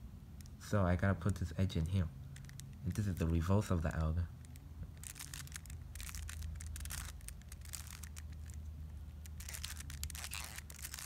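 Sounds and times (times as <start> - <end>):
plastic puzzle cube clicking: 4.4 - 8.6.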